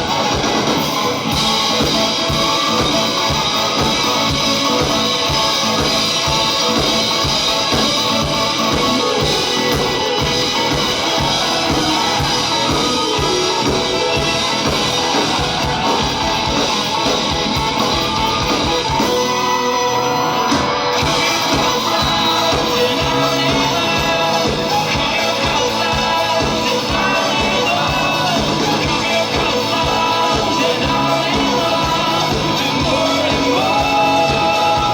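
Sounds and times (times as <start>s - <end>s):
drum kit: 0.0s - 34.9s
live rock band playing: 0.0s - 34.9s
vocals: 0.0s - 34.9s.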